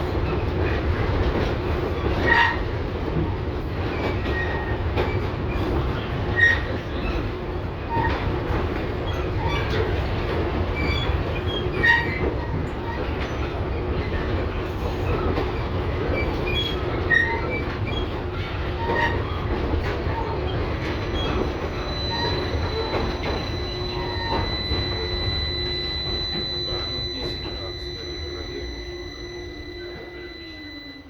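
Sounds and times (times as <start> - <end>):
tram wheels rumbling on rail: 0.0 - 31.0
wheel squeals and clicks: 10.7 - 13.6, 14.2 - 31.0.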